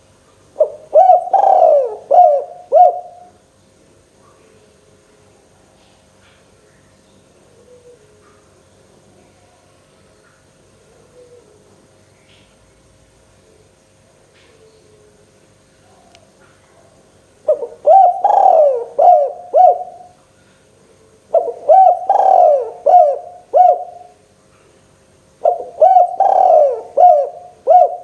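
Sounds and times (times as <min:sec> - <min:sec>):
dove cooing: 0:00.6 - 0:03.4, 0:07.4 - 0:08.5, 0:10.8 - 0:11.8, 0:17.4 - 0:20.2, 0:21.0 - 0:24.2, 0:25.4 - 0:28.0.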